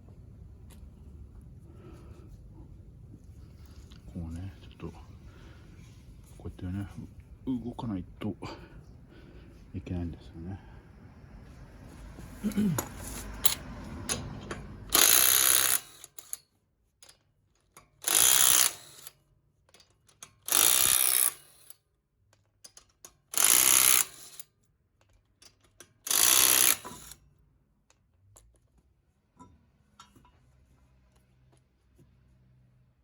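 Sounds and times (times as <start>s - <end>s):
impact wrench bursts: 14.9s - 16.4s, 18.0s - 19.2s, 20.4s - 21.8s, 23.3s - 24.5s, 26.0s - 27.2s.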